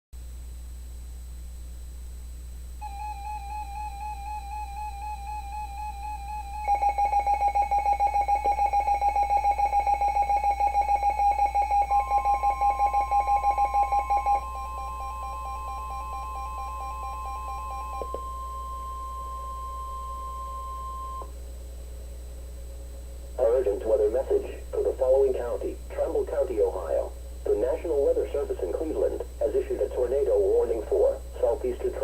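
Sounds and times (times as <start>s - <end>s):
pulsed beeps: 2.8s - 21.3s
steady attention tone: 2.8s - 32.0s.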